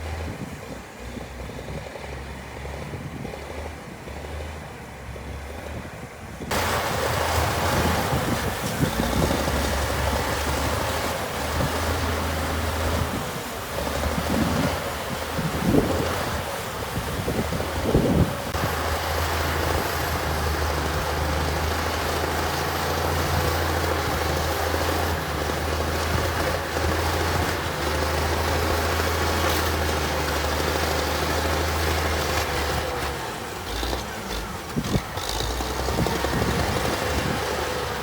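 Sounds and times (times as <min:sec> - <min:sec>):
heavy diesel engine running: 0:00.0 - 0:38.0.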